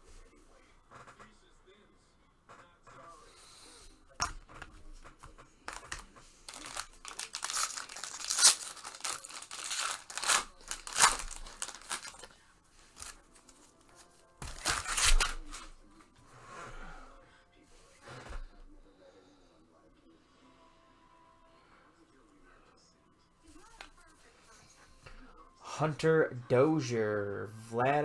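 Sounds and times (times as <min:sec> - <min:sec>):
packaging torn and crinkled: 0:05.7 - 0:12.3, 0:13.0 - 0:13.2, 0:14.4 - 0:15.7.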